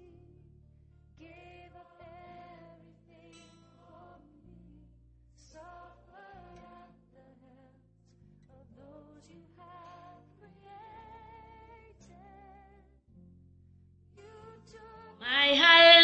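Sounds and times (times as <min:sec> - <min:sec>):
person singing long notes: 0:15.2 - 0:16.0.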